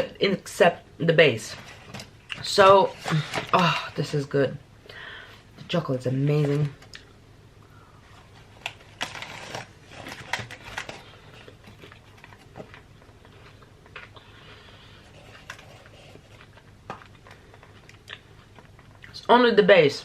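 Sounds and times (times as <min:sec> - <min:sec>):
chewing with small crunches: 0:15.2 - 0:19.2.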